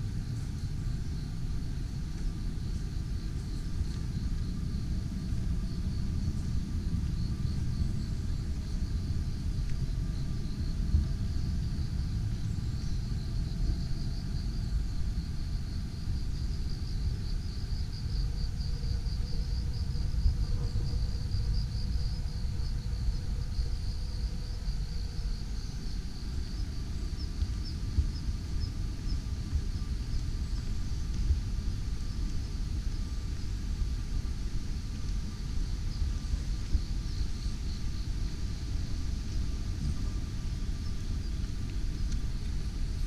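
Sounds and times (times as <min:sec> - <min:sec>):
continuous low rumble: 0:00.0 - 0:43.0
insects chirping trill: 0:00.0 - 0:43.0.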